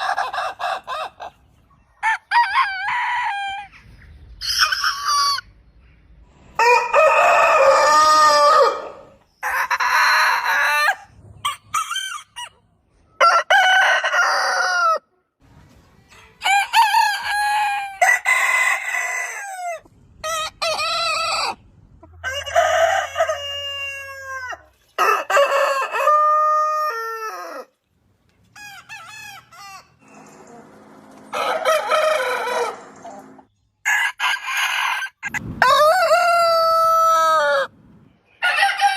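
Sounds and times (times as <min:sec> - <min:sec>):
roosters crowing: 0:02.0 - 0:03.8, 0:06.5 - 0:12.6, 0:13.2 - 0:15.1, 0:16.4 - 0:27.8, 0:28.5 - 0:37.8, 0:38.4 - 0:38.9.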